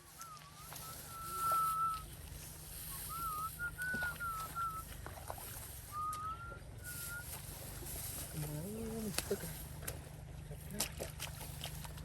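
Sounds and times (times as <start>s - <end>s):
wavering whistled tone: 0.0s - 5.0s, 5.8s - 7.5s
steady low hum: 0.0s - 12.0s.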